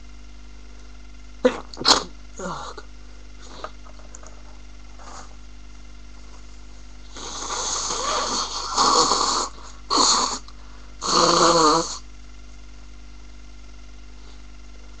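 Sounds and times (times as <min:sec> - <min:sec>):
woman sneezing: 0:01.5 - 0:02.8.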